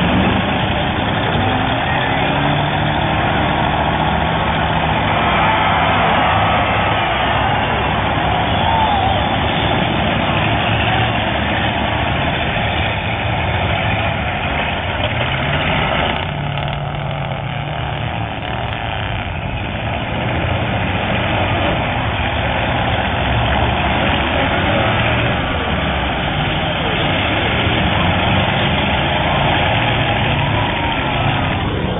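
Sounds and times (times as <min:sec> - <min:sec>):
car engines running loudly: 0:00.0 - 0:31.9.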